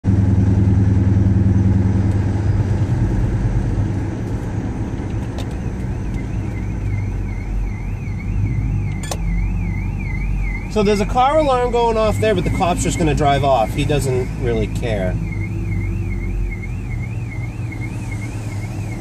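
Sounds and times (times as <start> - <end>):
car engine rumbling: 0.0 - 19.0
car alarm siren: 5.4 - 19.0.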